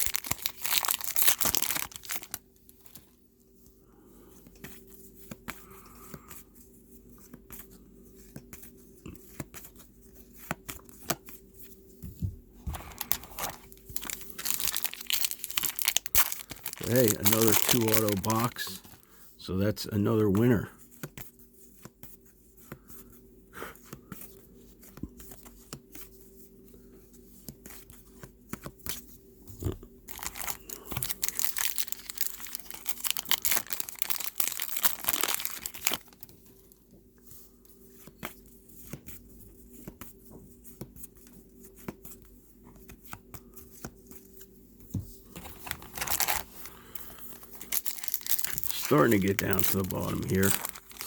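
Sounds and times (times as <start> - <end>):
wrappers tearing and crinkling: 0.0 - 3.2, 12.7 - 18.8, 30.1 - 36.6, 45.4 - 51.0.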